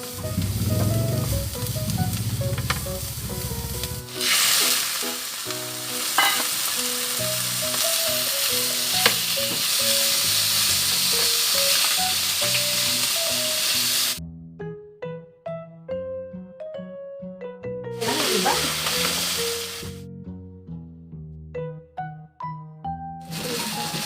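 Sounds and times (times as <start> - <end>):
food sizzling in a pan: 0.1 - 14.2, 18.0 - 20.0, 23.2 - 24.0.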